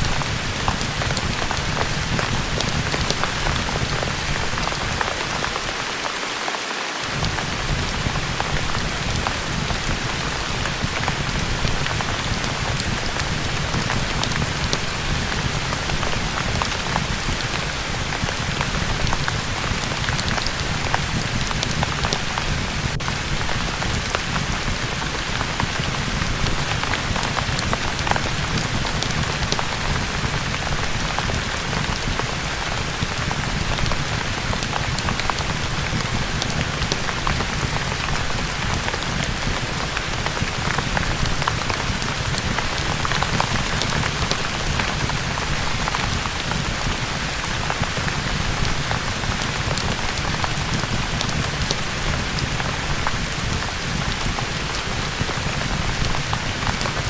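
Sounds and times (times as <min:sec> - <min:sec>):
rain drops ticking: 0:00.0 - 0:57.0
rain hissing on surfaces: 0:00.0 - 0:57.0.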